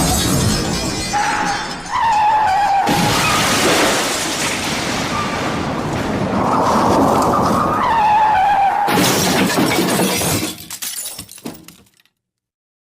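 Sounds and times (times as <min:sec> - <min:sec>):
loud car crash: 0:00.0 - 0:02.1, 0:02.7 - 0:10.8
glass shattering: 0:00.0 - 0:05.1, 0:08.9 - 0:12.1
debris clattering: 0:00.0 - 0:07.7, 0:08.9 - 0:12.2.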